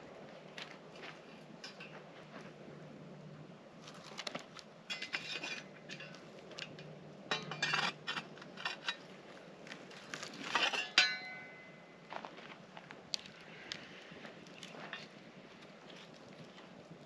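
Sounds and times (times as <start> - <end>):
metal cookware clinking and clattering: 4.9 - 9.0, 10.4 - 11.8
sharp ringing metal clank: 10.8 - 11.8.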